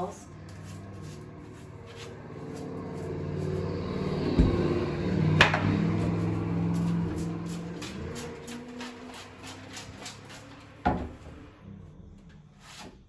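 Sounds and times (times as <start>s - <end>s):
dull thump of shelf: 4.2s - 5.0s
sharp wooden knock: 4.3s - 5.6s.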